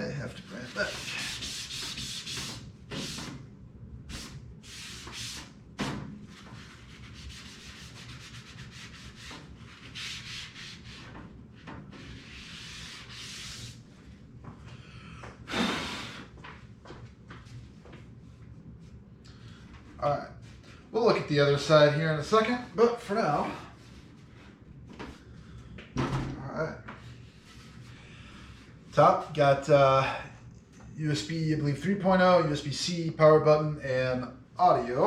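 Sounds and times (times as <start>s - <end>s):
rubbing on computer case: 6.3s - 13.9s.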